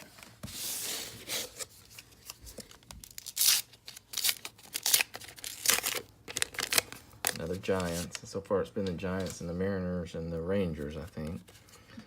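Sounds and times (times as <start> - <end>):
wrapper tearing and crinkling: 1.3 - 8.1.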